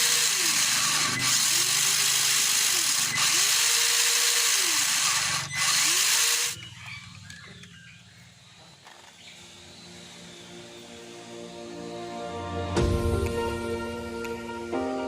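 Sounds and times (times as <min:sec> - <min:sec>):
small electric motor whirring: 0:00.0 - 0:11.1
soft music: 0:11.0 - 0:15.0.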